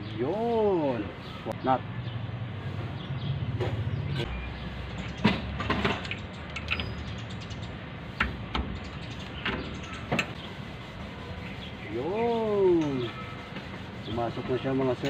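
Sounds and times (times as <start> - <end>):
metal knocks and clicks: 5.0 - 7.2, 8.2 - 10.4.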